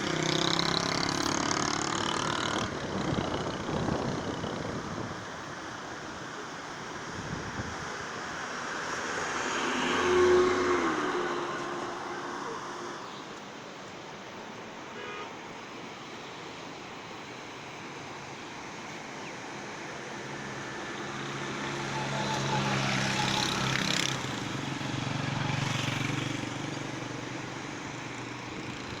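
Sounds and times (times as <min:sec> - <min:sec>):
vehicle engine passing: 0:00.0 - 0:04.6, 0:08.7 - 0:13.0, 0:19.9 - 0:29.0.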